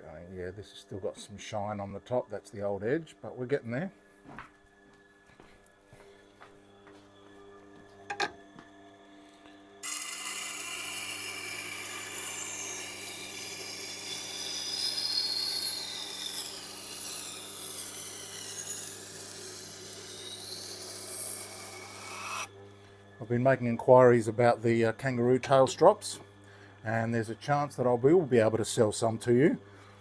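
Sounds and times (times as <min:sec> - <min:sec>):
motor humming: 0:09.2 - 0:23.0
knife scraping on sharpening wheel: 0:09.8 - 0:22.5.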